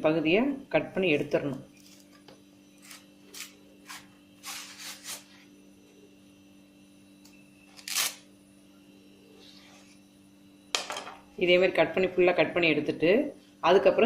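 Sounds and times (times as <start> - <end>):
faint steady hum: 0.0 - 14.0
banana leaf being cut: 2.8 - 5.3, 7.7 - 8.2.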